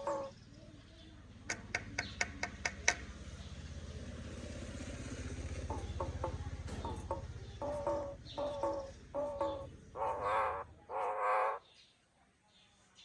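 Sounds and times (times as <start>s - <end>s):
myna sharp clicking calls: 0.0s - 0.3s, 1.4s - 3.2s, 5.5s - 11.6s
vehicle engine hum: 0.0s - 11.1s.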